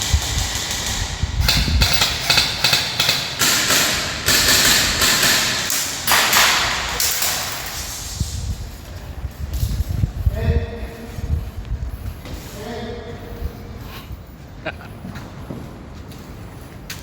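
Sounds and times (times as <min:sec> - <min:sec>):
airsoft gun shots clacking: 0:01.6 - 0:07.7.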